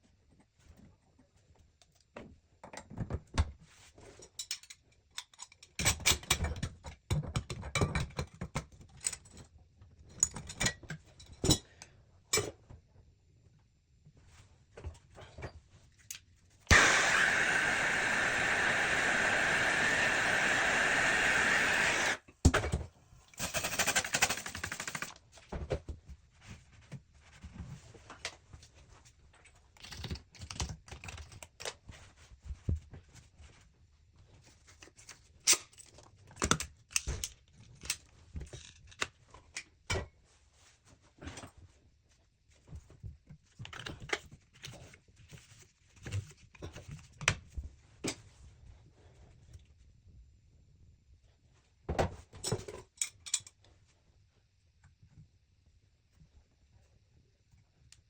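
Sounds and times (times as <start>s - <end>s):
loud steady hiss: 16.7s - 22.2s.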